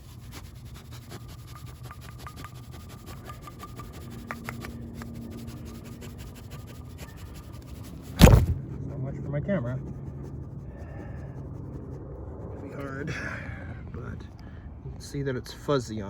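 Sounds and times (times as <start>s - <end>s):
flocking applicator puffing: 0.0s - 8.7s.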